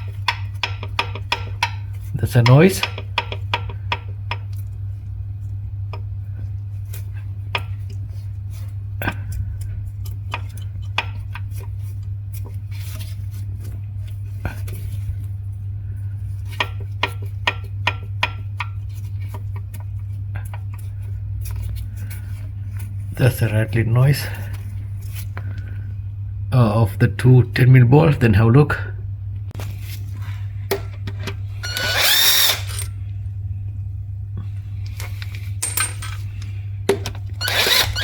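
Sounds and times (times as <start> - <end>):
steady low hum: 0.0 - 38.0
metal parts clinking: 31.6 - 32.9, 35.6 - 36.4.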